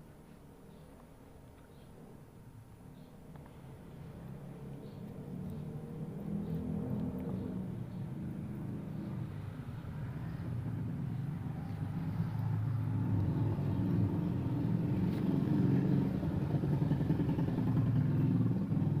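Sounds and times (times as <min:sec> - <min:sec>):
motor engine running: 0:10.3 - 0:19.0.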